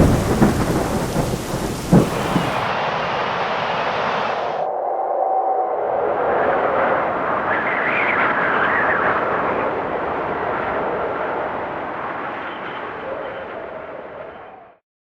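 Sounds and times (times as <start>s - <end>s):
loud rushing roar: 0.0s - 4.7s.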